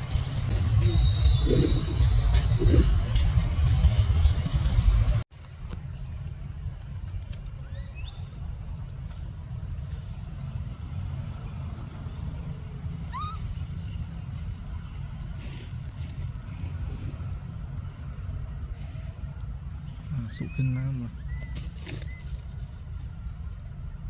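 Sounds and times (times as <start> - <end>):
low rumble: 0.0 - 20.4
high rising animal squeaks: 13.0 - 13.7.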